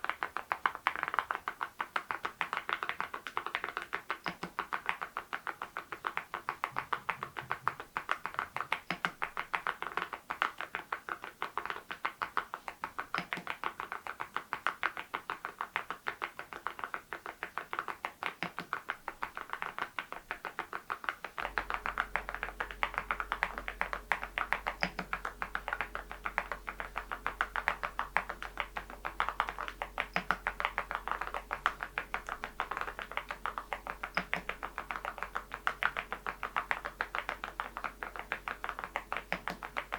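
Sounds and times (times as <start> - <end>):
faint low hum: 0.0 - 39.9
fast mechanical keyboard typing: 0.0 - 39.9.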